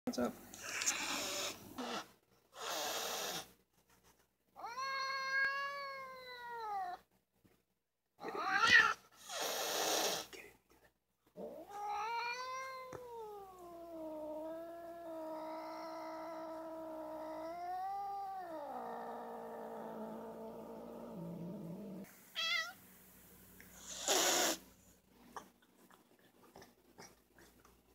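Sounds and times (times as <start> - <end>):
cat yowling: 4.6 - 7.0, 8.2 - 9.0, 11.5 - 20.6.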